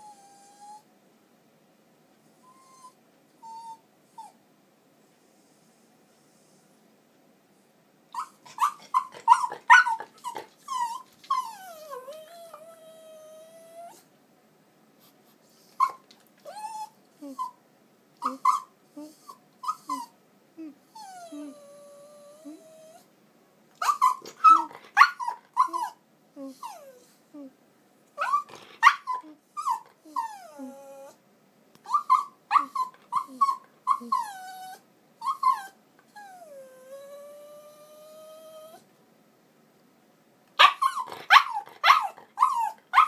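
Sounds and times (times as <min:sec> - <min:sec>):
dog whining: 0:00.0 - 0:00.9, 0:02.4 - 0:04.4, 0:08.1 - 0:14.1, 0:15.7 - 0:17.6, 0:18.2 - 0:23.1, 0:23.8 - 0:27.5, 0:28.2 - 0:31.2, 0:31.8 - 0:38.8, 0:40.6 - 0:43.0.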